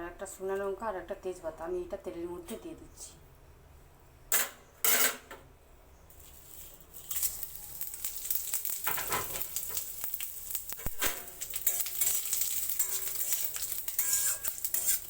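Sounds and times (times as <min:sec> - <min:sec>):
crackling sizzle: 0:06.0 - 0:15.0
spices sizzling in hot oil: 0:06.1 - 0:15.0.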